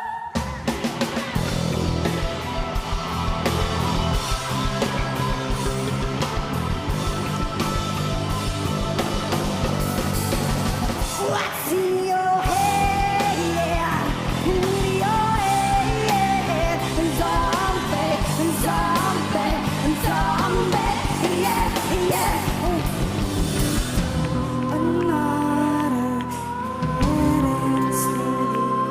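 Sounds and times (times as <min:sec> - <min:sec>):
heavy rock band music: 0:00.3 - 0:28.9
woman singing: 0:11.2 - 0:23.2, 0:24.3 - 0:28.9.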